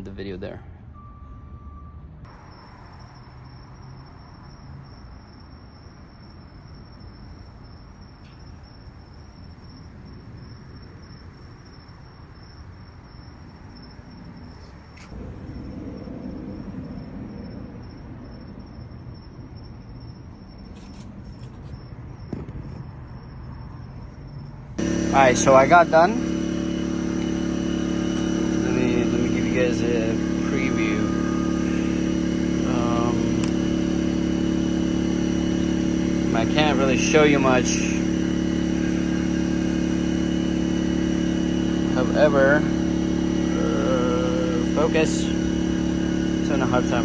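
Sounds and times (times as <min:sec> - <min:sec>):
air die grinder whining: 0:24.8 - 0:47.0.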